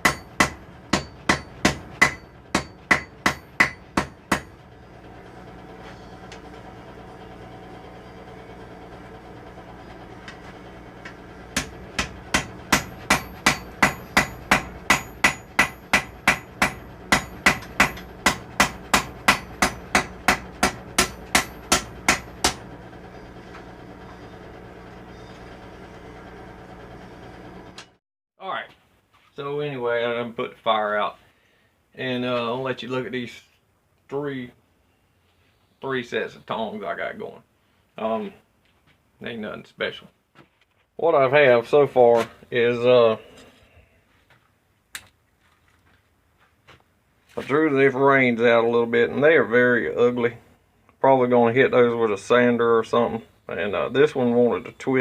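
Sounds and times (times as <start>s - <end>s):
hammer striking steel on anvil: 0.0s - 4.6s, 11.6s - 22.6s.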